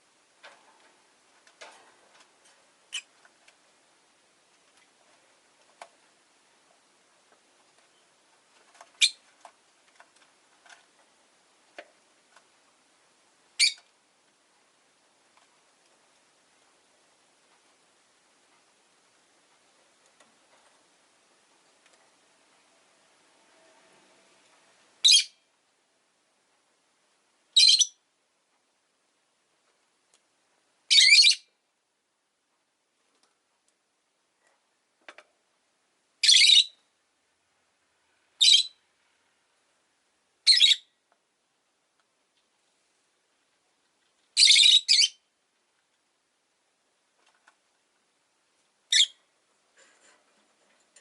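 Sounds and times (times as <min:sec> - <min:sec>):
lovebird chirping: 0:02.9 - 0:03.2, 0:09.0 - 0:09.3, 0:13.6 - 0:13.9, 0:25.0 - 0:25.4, 0:27.6 - 0:28.0, 0:30.9 - 0:31.5, 0:36.2 - 0:36.8, 0:38.4 - 0:38.8, 0:40.4 - 0:41.0, 0:44.4 - 0:45.3, 0:48.9 - 0:49.2.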